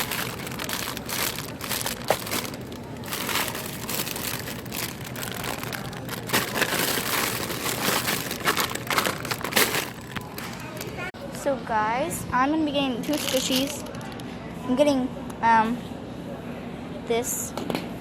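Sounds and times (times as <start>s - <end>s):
plastic packaging crinkling: 0.0s - 11.1s.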